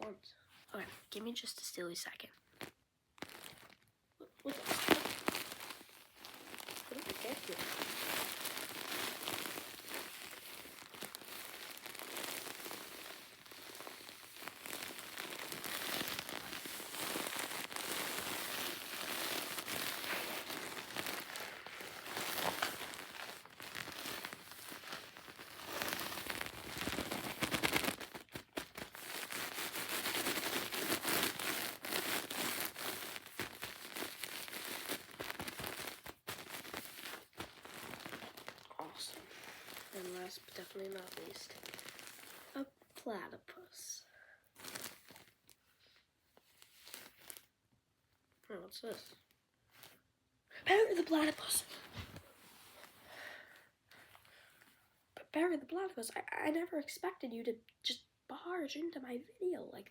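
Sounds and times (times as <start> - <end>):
crackling rubbing at microphone: 4.4 - 42.6.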